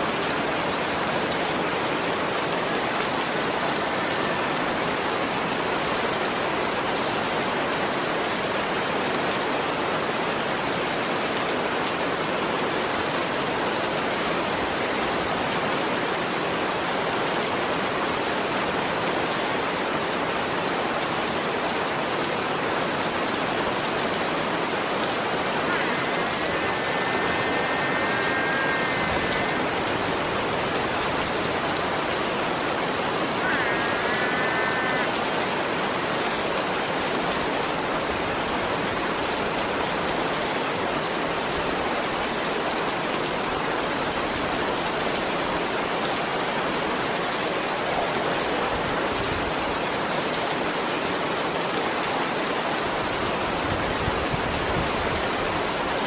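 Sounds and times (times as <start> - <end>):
heavy rain pouring: 0.0 - 56.0
faint high-pitched tone: 25.3 - 31.8, 33.3 - 35.5.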